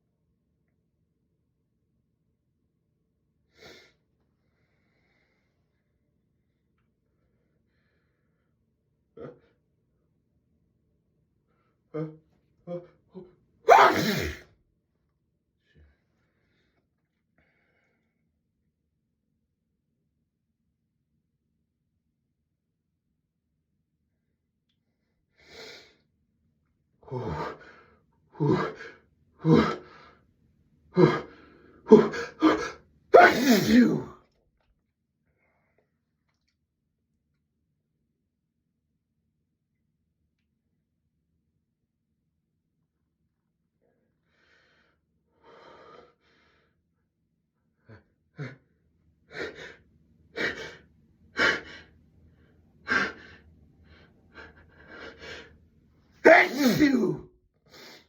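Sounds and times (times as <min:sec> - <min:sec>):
person gasping breaths: 0:13.7 - 0:14.4, 0:31.0 - 0:34.0, 0:50.4 - 0:50.8, 0:51.4 - 0:52.0, 0:56.3 - 0:58.0
person breathing heavily: 0:50.4 - 0:50.8, 0:51.4 - 0:52.0.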